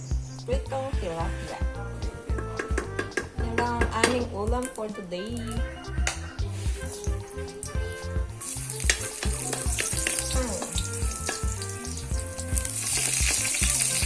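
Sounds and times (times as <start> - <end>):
background music with beat: 0.0 - 14.0
food sizzling in oil: 8.4 - 14.0.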